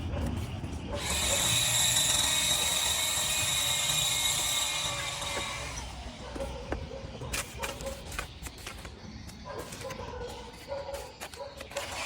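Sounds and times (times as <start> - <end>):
machine whining and rattling: 0.0 - 9.0.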